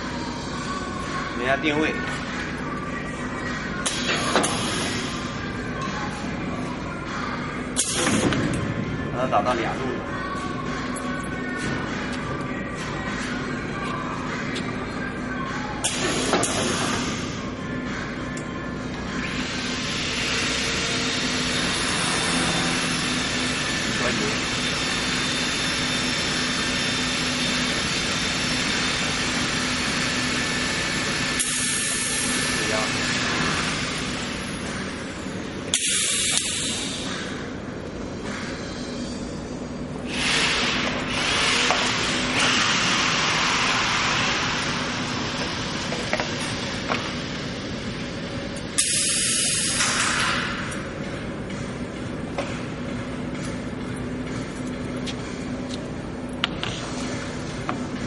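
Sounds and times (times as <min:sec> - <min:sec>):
steady mechanical hum: 0:00.0 - 0:58.0
workshop machine noise: 0:00.0 - 0:58.0
compressed air hissing: 0:35.7 - 0:37.2, 0:40.0 - 0:46.0, 0:48.8 - 0:50.4.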